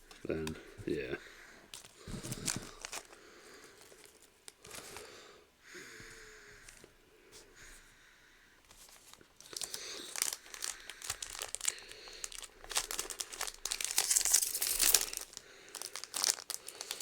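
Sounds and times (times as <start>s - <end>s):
wrapper crinkling and tearing: 1.7s - 5.1s, 8.7s - 17.0s.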